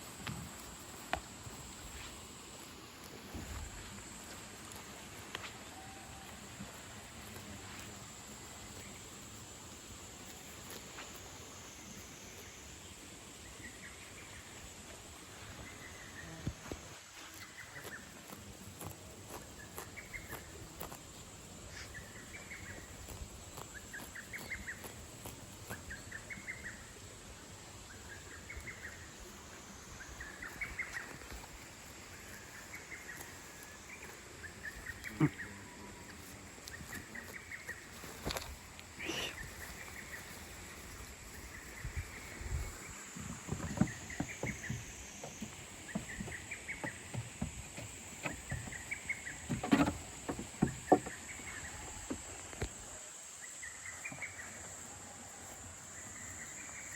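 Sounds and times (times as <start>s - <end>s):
high insect hiss: 0.0s - 56.9s
knocks and rustles: 42.8s - 52.8s.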